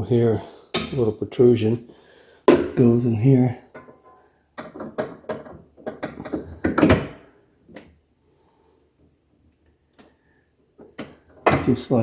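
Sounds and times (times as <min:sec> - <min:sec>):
plastic clicks and knocks: 0:04.6 - 0:07.1.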